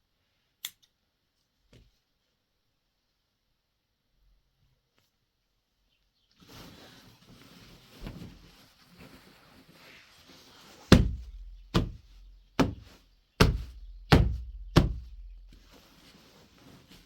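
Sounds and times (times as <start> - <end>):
heavy chopping blows: 10.9 - 15.3.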